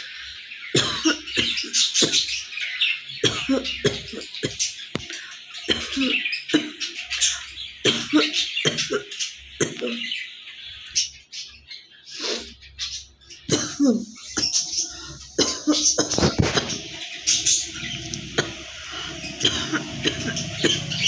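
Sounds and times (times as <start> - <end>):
woman coughing and gagging: 0.8 - 2.3, 3.2 - 4.7, 5.7 - 6.8, 7.8 - 10.1, 13.5 - 14.5, 15.4 - 16.8, 19.4 - 20.9.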